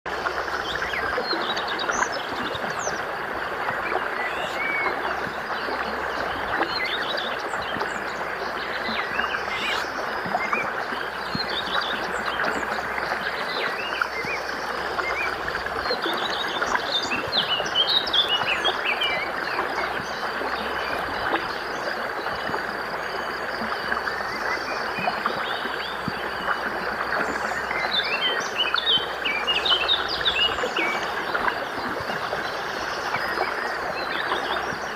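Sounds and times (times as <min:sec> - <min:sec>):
birds chirping: 0:00.2 - 0:15.4.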